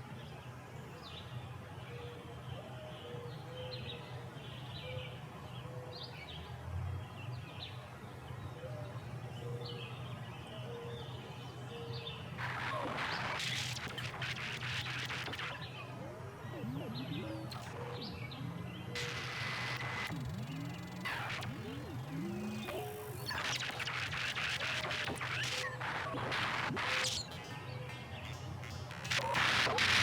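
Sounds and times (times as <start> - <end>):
birds chirping: 11.9 - 30.0
steady low hum: 12.3 - 30.0.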